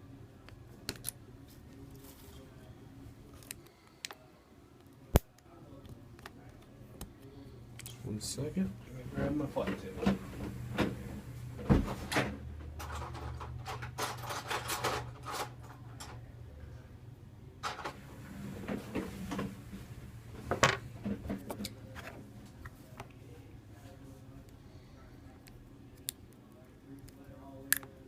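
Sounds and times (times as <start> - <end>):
low steady hum: 0.0 - 28.0
tools clattering on workbench: 11.9 - 16.2.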